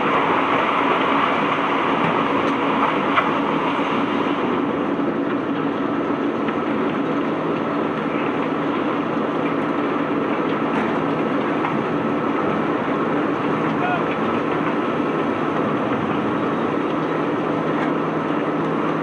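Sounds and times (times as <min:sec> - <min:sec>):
cobblestones rumbling and rattling: 0:05.1 - 0:19.0.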